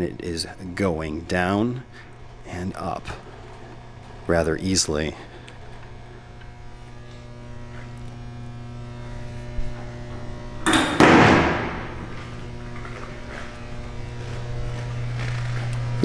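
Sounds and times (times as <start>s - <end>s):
low electrical hum: 0.0s - 16.0s
loud clunk with hiss: 10.6s - 12.3s.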